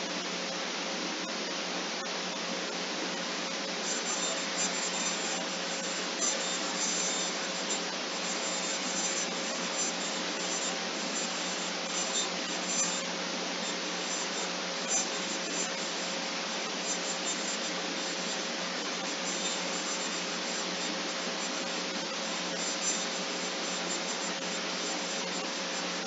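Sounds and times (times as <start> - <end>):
faint hum: 0.0 - 26.0
steady hiss: 0.0 - 26.0.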